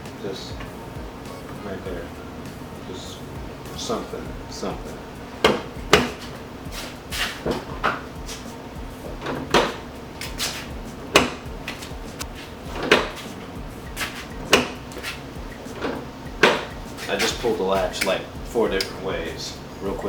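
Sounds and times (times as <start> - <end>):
fuel filler door clicking shut: 5.2 - 19.2.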